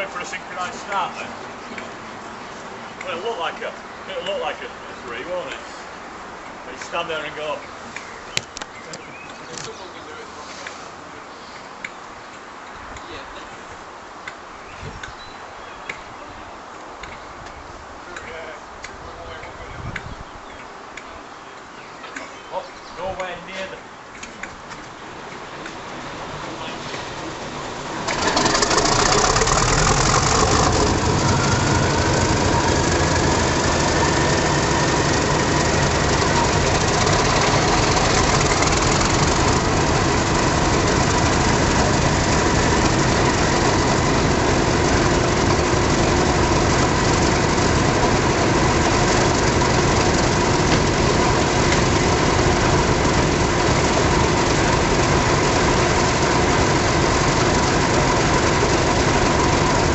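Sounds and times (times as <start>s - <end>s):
diesel locomotive engines idling: 25.1s - 59.9s
rising whine: 28.0s - 59.9s.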